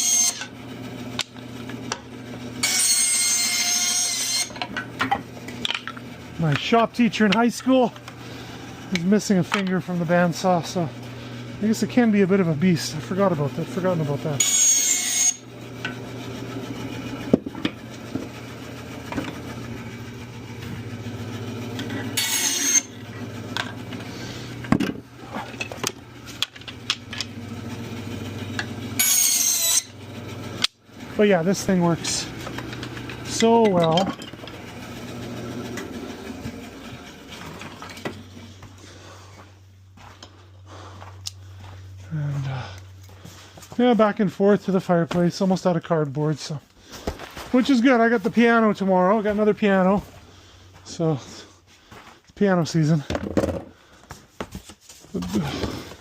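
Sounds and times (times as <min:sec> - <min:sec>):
bandsaw cutting wood: 0:00.0 - 0:38.2
bandsaw humming: 0:00.0 - 0:39.5.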